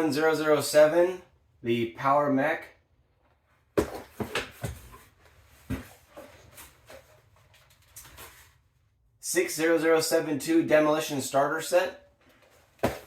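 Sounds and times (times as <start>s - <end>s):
boxes knocking on surface: 3.8s - 4.8s, 12.8s - 13.0s
cardboard rustling and scraping: 3.8s - 8.6s.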